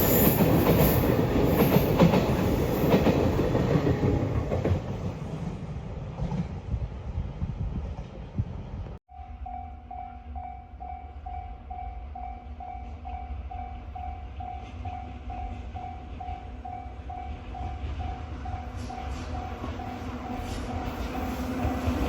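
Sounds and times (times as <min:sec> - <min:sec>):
freight train rumbling by: 0:00.0 - 0:09.0, 0:10.0 - 0:22.0
level-crossing warning bell ringing: 0:09.1 - 0:20.6.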